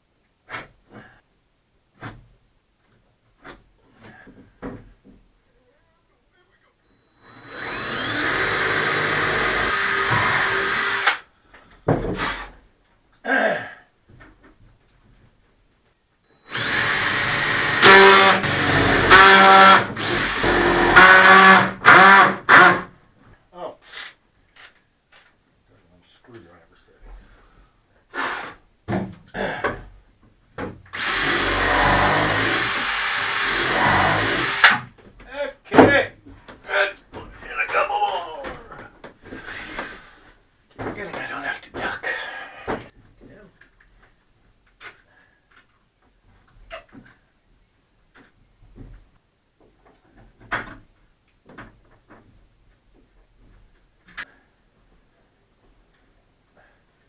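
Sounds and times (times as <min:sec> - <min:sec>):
power drill whining: 0:07.2 - 0:11.2, 0:16.4 - 0:22.9, 0:30.9 - 0:34.8, 0:39.3 - 0:40.2.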